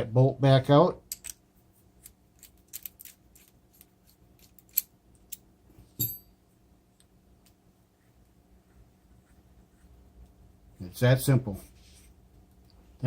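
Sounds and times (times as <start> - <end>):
hex key clicking and scraping: 2.0 - 5.4
sharp metallic clink: 6.0 - 6.3.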